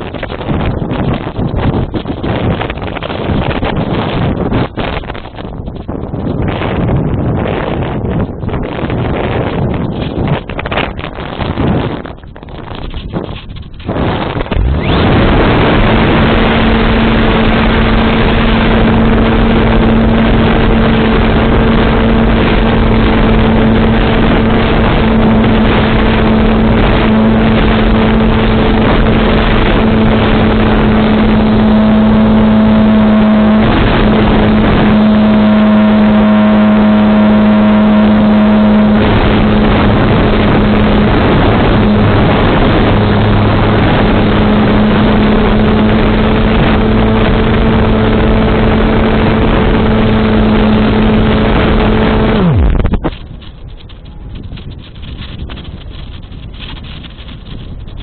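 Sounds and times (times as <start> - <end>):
electric motor and propeller: 0.0 - 58.0
wind rushing: 0.0 - 58.0
higher tone: 14.5 - 53.1.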